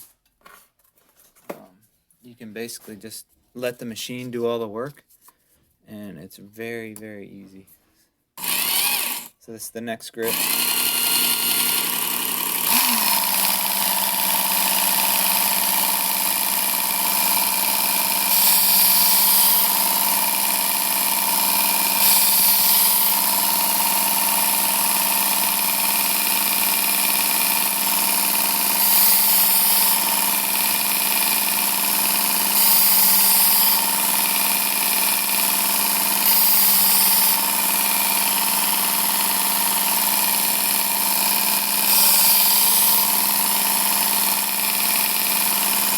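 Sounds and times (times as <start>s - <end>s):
belt sharpener motor humming: 8.4s - 9.3s, 10.2s - 45.9s.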